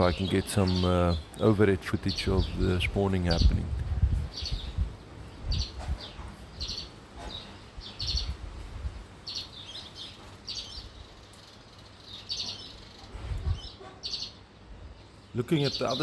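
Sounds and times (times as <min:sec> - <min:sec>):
wind buffeting microphone: 0:00.0 - 0:09.3, 0:13.1 - 0:13.9
birds chirping: 0:00.0 - 0:16.0.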